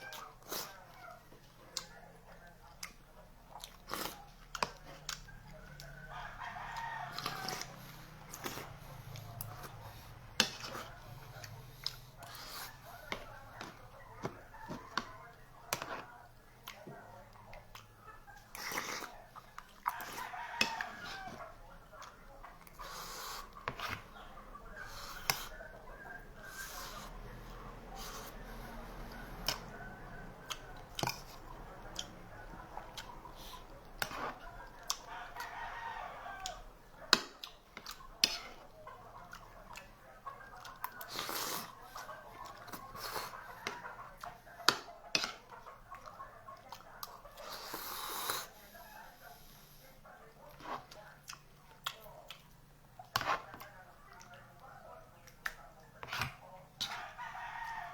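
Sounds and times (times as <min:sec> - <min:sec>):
chewing and lip smacking: 0:00.0 - 0:06.0, 0:06.9 - 0:35.7, 0:36.4 - 0:48.5, 0:50.2 - 0:57.0
rooster crowing: 0:05.6 - 0:08.4, 0:19.9 - 0:21.6, 0:35.0 - 0:36.8, 0:56.9 - 0:57.9.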